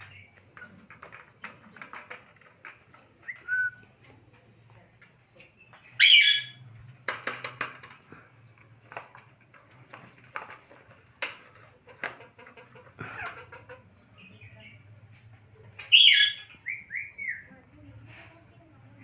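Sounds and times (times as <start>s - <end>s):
parrot call: 6.0s - 6.6s, 15.9s - 17.4s
parrot whistle: 6.0s - 6.6s.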